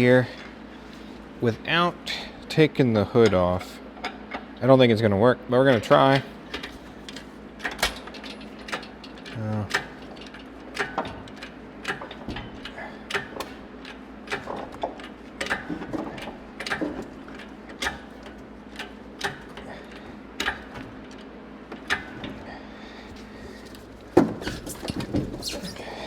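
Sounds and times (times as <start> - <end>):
engine hoist pump clanking: 5.6 - 26.0
engine clunk and clatter: 5.7 - 25.5.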